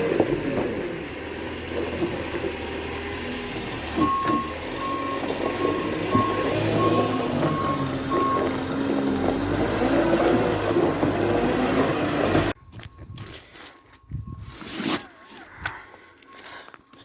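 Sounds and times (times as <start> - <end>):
farm vehicle engine: 0.0 - 17.0
reversing beeper: 4.0 - 8.7, 12.6 - 17.0.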